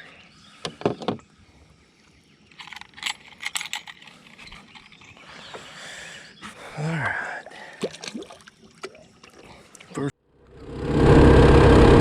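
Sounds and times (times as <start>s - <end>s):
metallic jingling rattle: 2.5s - 5.2s.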